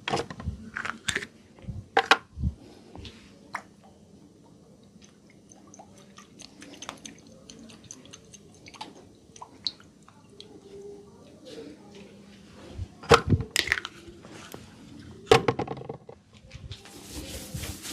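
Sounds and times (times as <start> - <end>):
hands rubbing oily hair squelching: 16.8 - 17.9.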